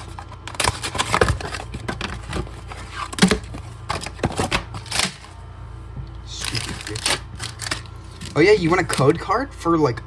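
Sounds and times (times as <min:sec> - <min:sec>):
foil wrapper crackling and tearing: 0:06.4 - 0:09.1.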